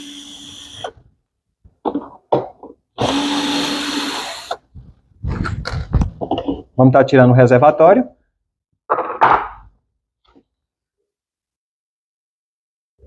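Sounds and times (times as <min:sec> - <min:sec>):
cordless screwdriver running: 0:00.0 - 0:00.9, 0:03.0 - 0:04.6.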